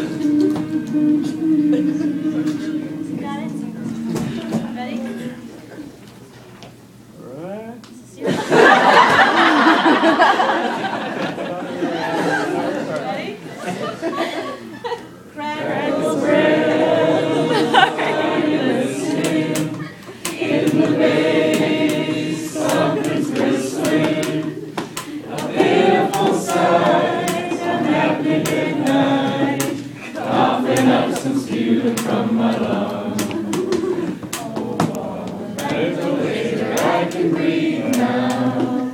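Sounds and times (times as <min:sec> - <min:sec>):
voices singing in chorus: 0:00.0 - 0:05.8, 0:08.3 - 0:14.3, 0:15.3 - 0:38.9.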